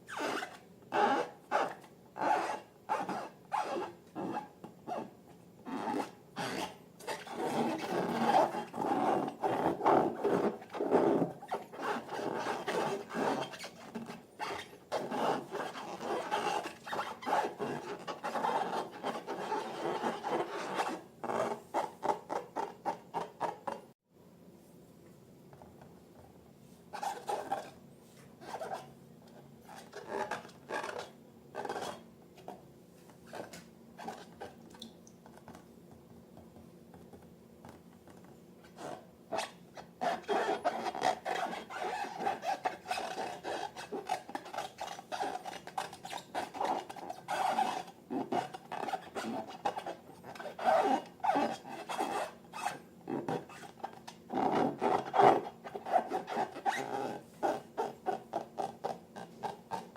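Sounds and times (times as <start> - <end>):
rubber balloons squeaking: 0.1 - 5.1, 5.7 - 23.4, 38.8 - 59.9.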